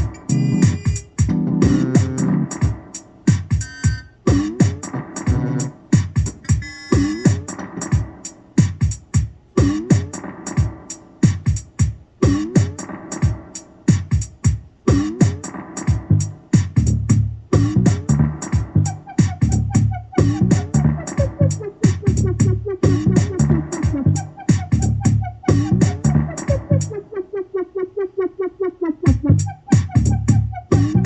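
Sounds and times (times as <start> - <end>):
sequenced synth bass notes: 0.0 - 2.8, 3.6 - 7.5, 16.0 - 31.0
programmed drum beat: 0.0 - 27.0, 29.0 - 31.0.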